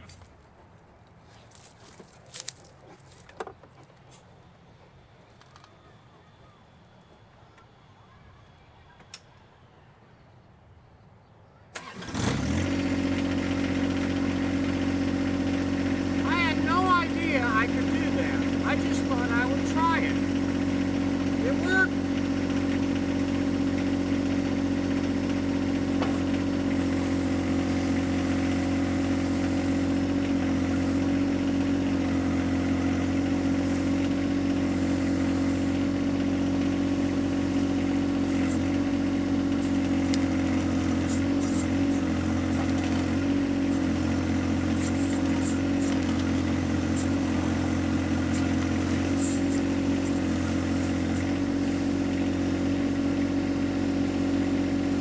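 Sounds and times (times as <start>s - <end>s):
diesel tractor engine running: 11.7s - 55.0s.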